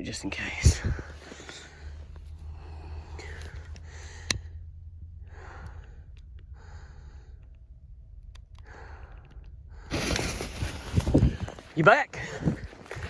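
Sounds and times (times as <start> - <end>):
steady low rumble: 0.0 - 13.0
person breathing: 0.8 - 7.9, 8.6 - 11.6.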